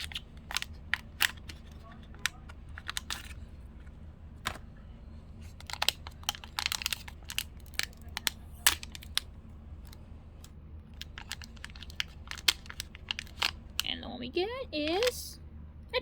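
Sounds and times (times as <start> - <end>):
packaging tearing and crinkling: 0.0 - 3.4, 5.4 - 10.0, 11.0 - 13.8
low steady hum: 0.0 - 16.0.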